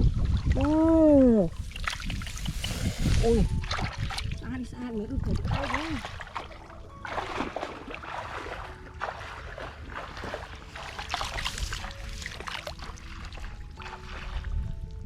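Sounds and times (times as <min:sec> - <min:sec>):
water splashing and sloshing: 0:00.0 - 0:15.0.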